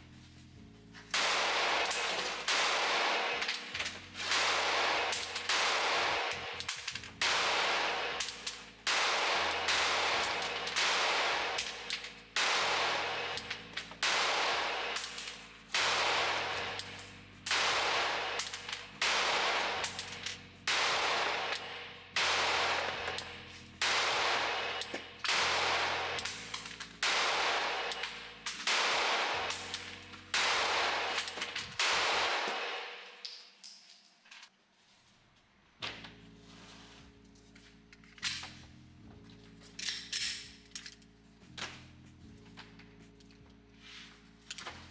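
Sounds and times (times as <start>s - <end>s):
pistol shots with echo: 1.1s - 33.4s.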